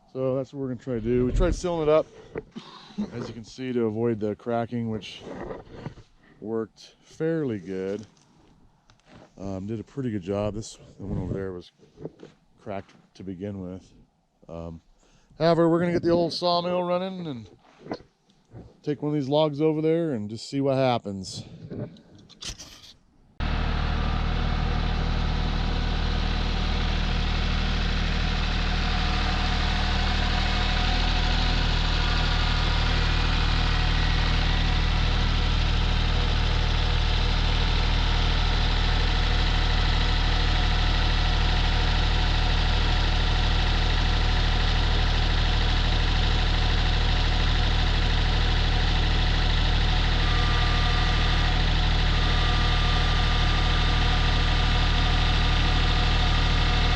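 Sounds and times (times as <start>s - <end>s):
sawmill gasoline engine running: 0.0s - 2.2s, 23.4s - 56.9s.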